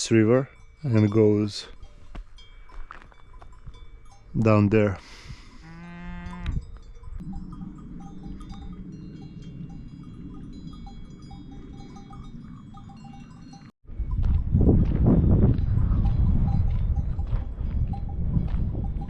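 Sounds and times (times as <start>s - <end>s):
cowbells clinking: 0.0s - 14.4s, 15.2s - 19.0s
cow mooing: 5.6s - 6.7s
low rushing background: 7.0s - 13.6s.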